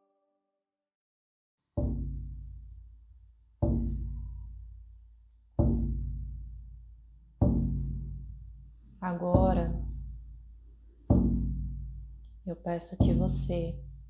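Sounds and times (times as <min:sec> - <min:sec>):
deep drum booming: 0:03.6 - 0:04.2, 0:05.6 - 0:06.5, 0:07.4 - 0:08.4, 0:09.3 - 0:10.2, 0:11.1 - 0:12.2, 0:13.0 - 0:14.0.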